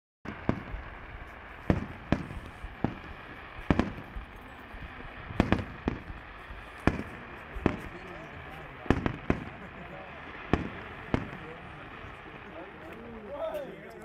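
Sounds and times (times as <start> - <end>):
fireworks bangs: 0.3 - 13.8.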